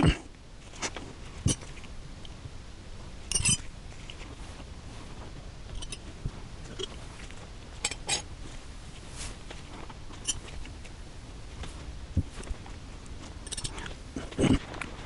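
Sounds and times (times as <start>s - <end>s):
metal wrenches clinking: 3.3s - 3.6s, 13.4s - 13.7s.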